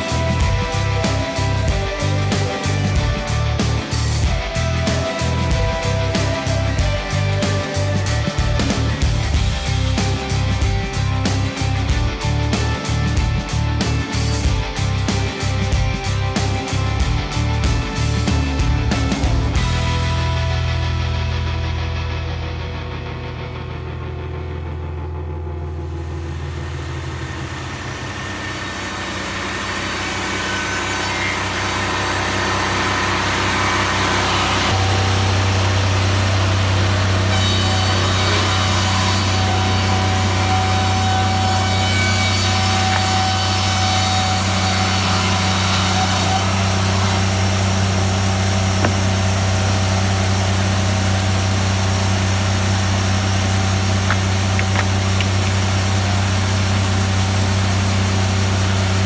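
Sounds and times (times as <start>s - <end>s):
saw cutting wood: 0.0s - 10.6s, 25.9s - 59.0s
sawmill engine hum: 0.0s - 22.0s, 22.6s - 59.0s.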